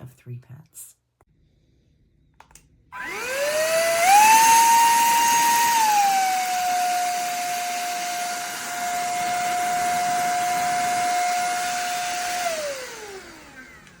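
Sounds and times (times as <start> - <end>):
handheld vacuum motor whine: 3.0 - 14.0.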